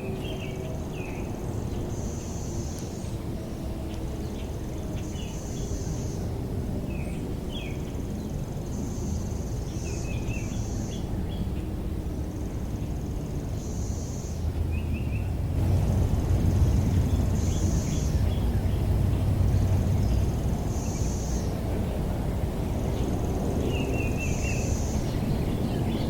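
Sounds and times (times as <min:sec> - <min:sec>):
vehicle approaching: 0:00.0 - 0:26.0
steady low rumble: 0:06.0 - 0:26.0
birds chirping: 0:12.4 - 0:26.0.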